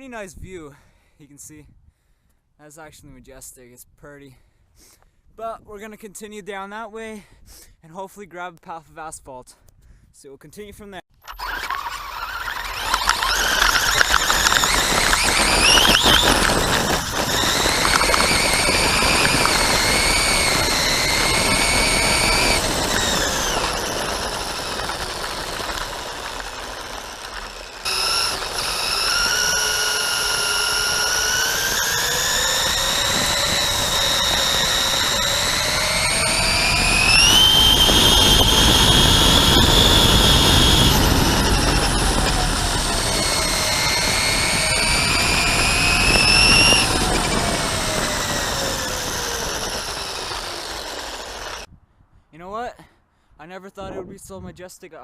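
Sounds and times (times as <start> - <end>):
toy truck motor whining: 11.2 - 51.7
tyres rough running noise: 11.2 - 51.7.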